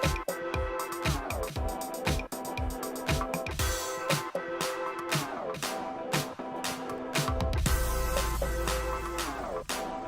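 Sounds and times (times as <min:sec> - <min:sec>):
electronic music with steady beat: 0:00.0 - 0:10.0
deep bass: 0:07.6 - 0:09.8.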